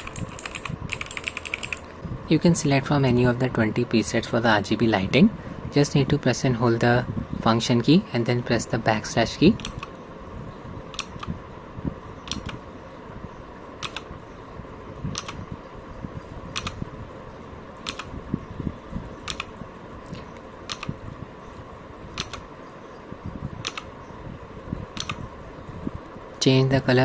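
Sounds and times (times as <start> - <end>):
mechanical keyboard key clicking: 0.0 - 1.9, 10.9 - 11.3, 12.3 - 12.6, 13.8 - 14.1, 15.1 - 15.4, 16.6 - 16.8, 17.8 - 18.1, 19.3 - 19.5, 20.7 - 20.9, 22.2 - 22.4, 23.6 - 23.9, 25.0 - 25.2
steady low hum: 0.0 - 27.0.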